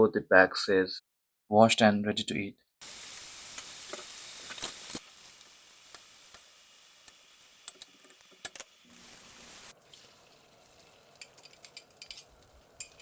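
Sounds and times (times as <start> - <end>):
food sizzling in a frying pan: 2.8 - 13.0
utensil clicking against pan: 11.2 - 13.0.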